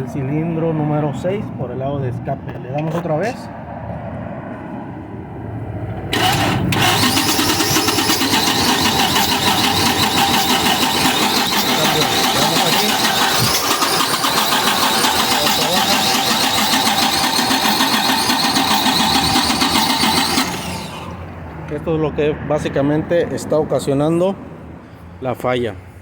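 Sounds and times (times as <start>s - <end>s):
engine cranking on starter: 6.1s - 21.4s.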